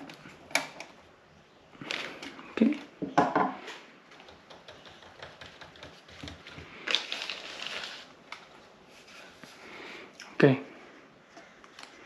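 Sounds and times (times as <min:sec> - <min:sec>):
plastic parts clicking and tapping: 0:00.0 - 0:01.0
plastic scraping and rustling: 0:05.4 - 0:09.6.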